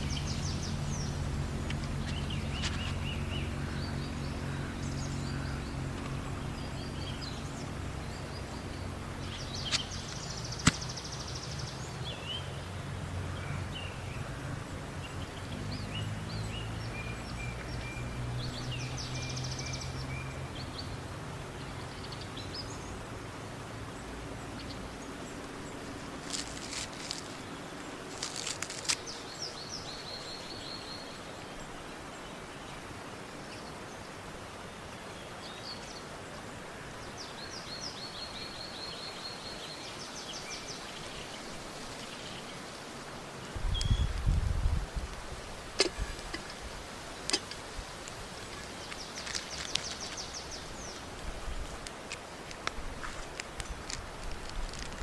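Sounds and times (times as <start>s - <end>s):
low steady hum: 0.0s - 29.3s
wild birds calling: 0.0s - 32.8s
outdoor background noise: 0.0s - 55.0s.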